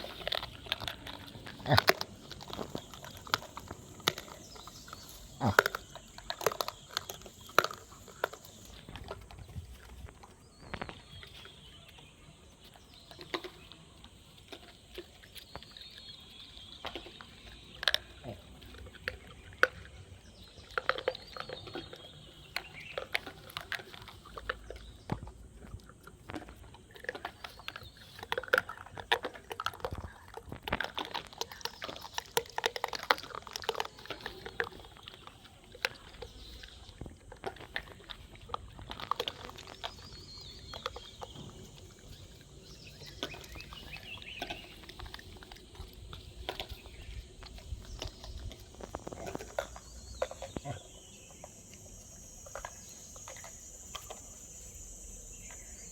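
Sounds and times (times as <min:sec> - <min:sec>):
bird chirping: 0:00.0 - 0:23.7, 0:38.2 - 0:55.9
monkeys crunching and chewing: 0:00.0 - 0:55.9.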